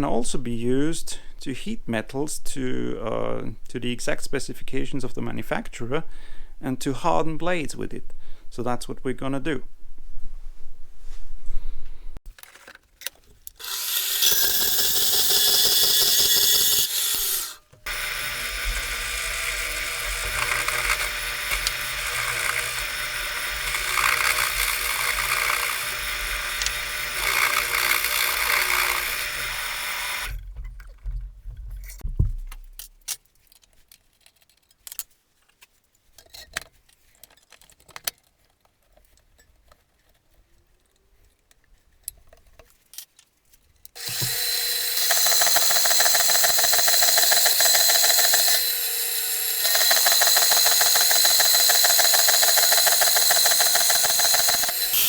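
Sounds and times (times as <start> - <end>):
power tool motor cutting steel: 13.5 - 30.4, 44.0 - 55.0.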